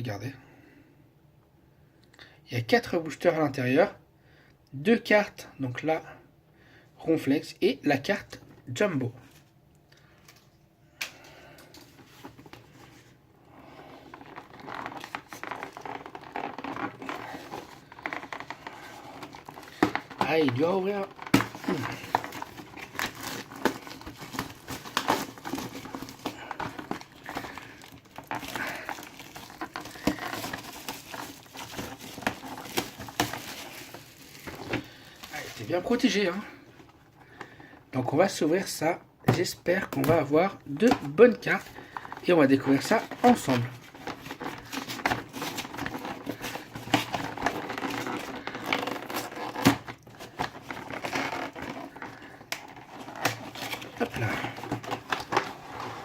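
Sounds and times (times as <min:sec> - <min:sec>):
plastic wrapping crinkling and tearing: 0:13.7 - 0:36.6, 0:39.3 - 0:56.0.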